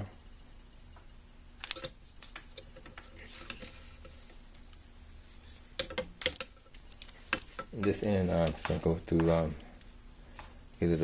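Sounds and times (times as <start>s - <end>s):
cable parts clicking and tapping: 1.6s - 3.8s, 5.8s - 10.5s.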